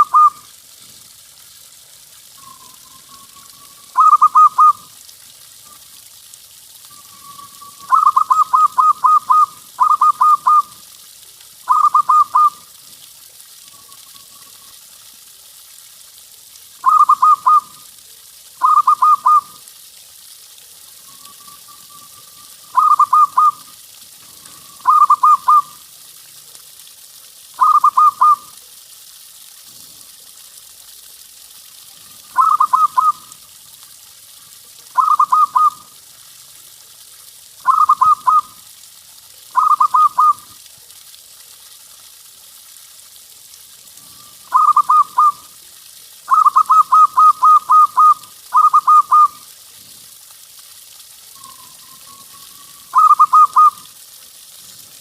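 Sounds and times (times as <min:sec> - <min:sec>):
dove cooing: 0:00.0 - 0:00.4, 0:03.9 - 0:04.8, 0:07.2 - 0:10.7, 0:11.7 - 0:12.6, 0:16.8 - 0:17.7, 0:18.6 - 0:19.5, 0:22.1 - 0:23.6, 0:24.4 - 0:25.7, 0:27.6 - 0:28.4, 0:32.4 - 0:33.2, 0:35.0 - 0:35.8, 0:37.6 - 0:38.5, 0:39.6 - 0:40.4, 0:44.5 - 0:45.4, 0:52.9 - 0:53.8
faint steady hiss: 0:00.0 - 0:55.0.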